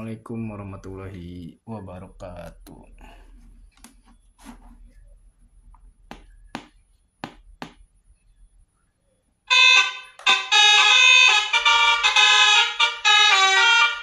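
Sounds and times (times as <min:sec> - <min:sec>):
horn melody from sound module: 0:09.5 - 0:14.0.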